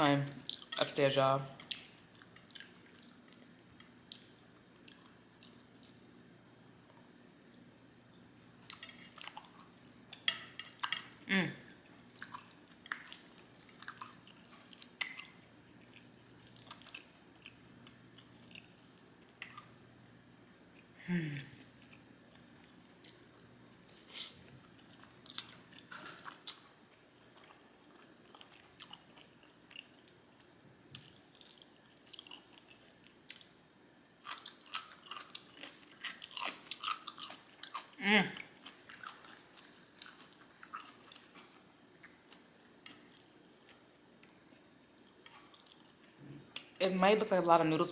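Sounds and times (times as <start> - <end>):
chewing noodles: 11.8 - 17.6, 31.0 - 33.5, 34.2 - 43.9, 45.0 - 46.8.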